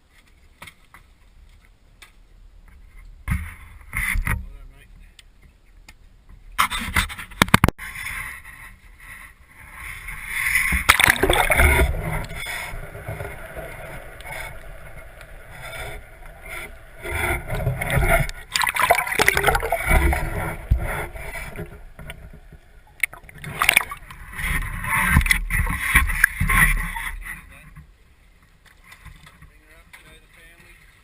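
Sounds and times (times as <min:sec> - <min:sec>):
sharp knocks and scrapes: 0:02.7 - 0:04.6, 0:06.6 - 0:27.9
water sloshing around boat: 0:09.8 - 0:27.8.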